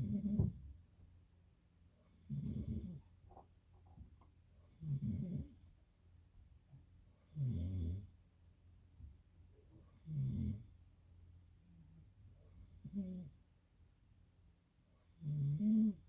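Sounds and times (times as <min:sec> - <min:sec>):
quiet breathing: 0:02.0 - 0:03.4.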